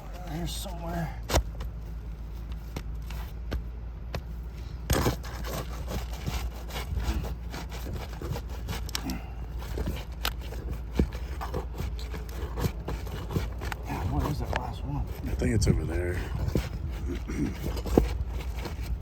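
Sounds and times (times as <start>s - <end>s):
hand tool scraping roof shingles: 4.8s - 19.0s.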